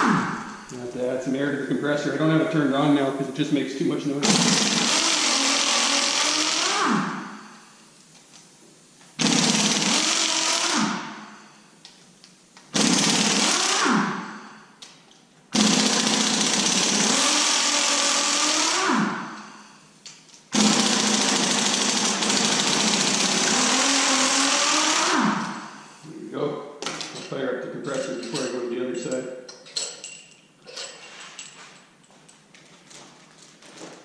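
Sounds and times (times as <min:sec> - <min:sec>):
pneumatic impact wrench bursts: 0:00.0 - 0:00.7, 0:04.2 - 0:07.8, 0:09.2 - 0:11.6, 0:12.7 - 0:14.8, 0:15.5 - 0:26.0.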